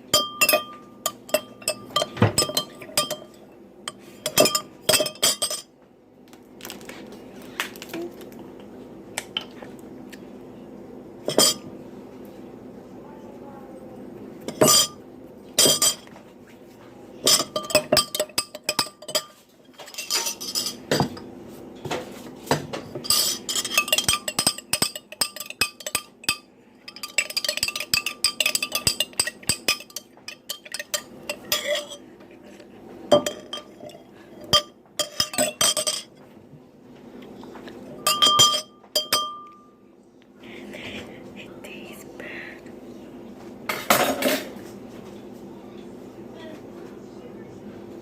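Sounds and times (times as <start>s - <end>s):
spoon clinking against glass: 0.1s - 3.4s, 4.2s - 5.7s, 11.3s - 11.6s, 17.2s - 21.2s, 23.0s - 32.0s, 33.1s - 36.1s, 38.0s - 39.7s.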